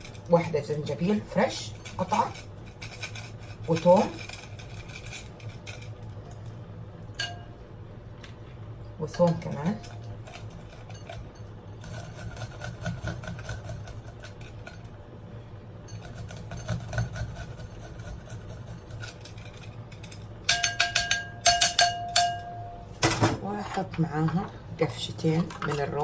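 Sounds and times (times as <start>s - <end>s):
utensil clinking against bowl: 7.1s - 7.6s, 9.1s - 14.9s, 15.9s - 26.0s.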